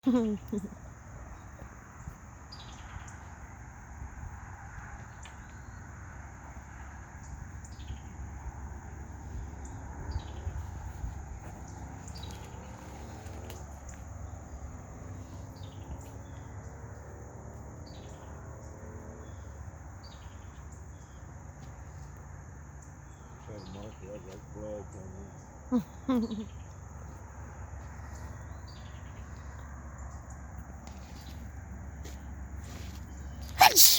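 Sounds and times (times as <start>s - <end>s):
high insect trill: 32.6s - 33.9s
short falling chirps: 33.6s - 33.9s.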